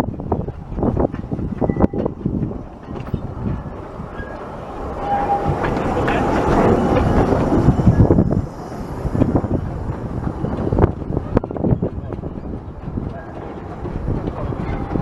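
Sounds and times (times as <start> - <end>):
miniature steam train running: 0.0 - 15.0.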